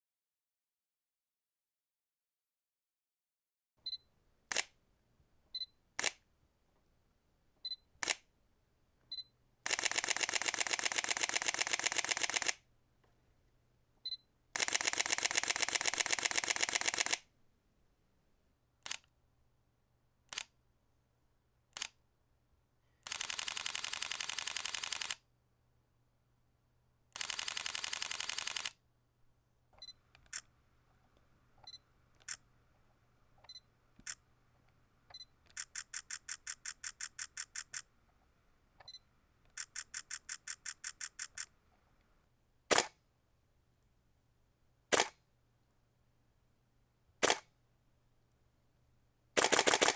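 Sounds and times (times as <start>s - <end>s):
camera shutter clicks: 4.5s - 4.7s, 6.0s - 6.2s, 8.0s - 8.2s, 9.7s - 12.6s, 14.6s - 17.2s, 18.8s - 19.0s, 20.3s - 20.5s, 23.1s - 25.2s, 27.2s - 28.8s, 35.1s - 37.9s, 39.5s - 41.5s, 42.7s - 43.0s, 44.9s - 45.2s, 47.2s - 47.5s, 49.4s - 49.9s
rapid-fire shutter bursts: 9.7s - 12.6s, 14.6s - 17.2s, 23.1s - 25.2s, 27.2s - 28.7s, 35.5s - 37.9s, 39.6s - 41.5s, 42.7s - 43.0s, 44.9s - 45.2s, 47.2s - 47.5s, 49.4s - 49.9s.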